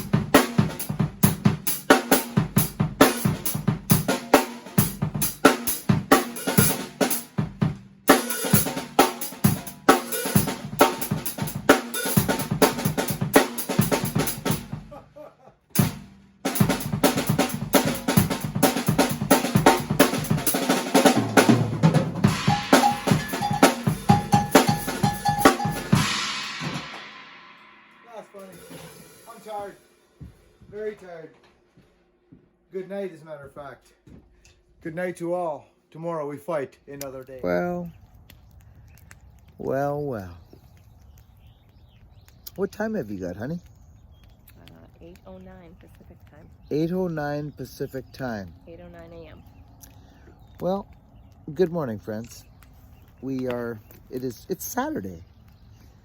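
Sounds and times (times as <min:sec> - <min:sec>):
drum kit playing a busy beat: 0:00.0 - 0:15.1, 0:15.7 - 0:30.0.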